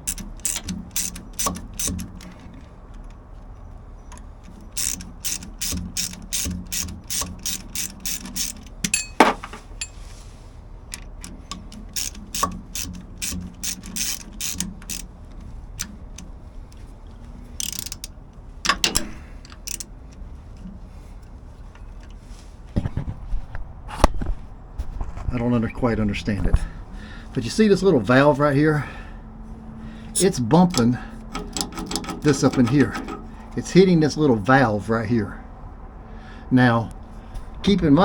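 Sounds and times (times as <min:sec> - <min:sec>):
ratchet wrench clicking: 0:00.0 - 0:03.1, 0:04.1 - 0:09.1, 0:10.9 - 0:15.2, 0:17.5 - 0:19.9, 0:30.2 - 0:33.4.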